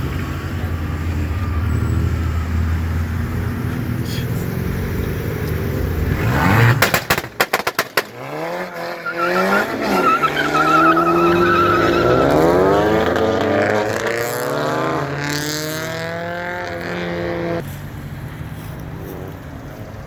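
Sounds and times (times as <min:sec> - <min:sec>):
car engine revving: 0:00.0 - 0:19.4.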